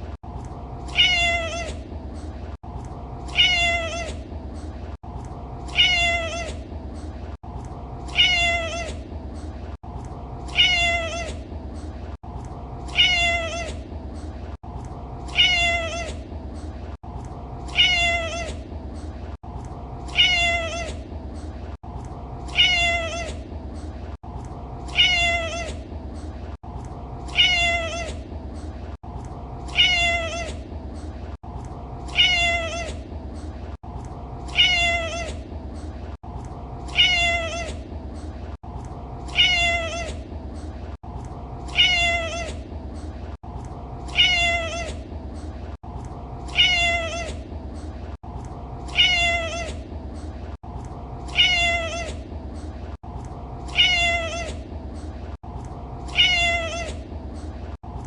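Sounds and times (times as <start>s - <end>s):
cat meowing: 0.9s - 1.8s, 3.3s - 4.2s, 5.7s - 6.6s, 8.1s - 9.0s, 10.5s - 11.4s, 12.9s - 13.8s, 15.3s - 16.2s, 17.7s - 18.6s, 20.1s - 21.0s, 22.5s - 23.4s, 24.9s - 25.8s, 27.3s - 28.2s, 29.7s - 30.6s, 32.1s - 33.0s, 34.5s - 35.4s, 36.9s - 37.8s, 39.3s - 40.2s, 41.7s - 42.6s, 44.1s - 45.0s, 46.5s - 47.4s, 48.9s - 49.8s, 51.3s - 52.2s, 53.7s - 54.6s, 56.1s - 57.0s.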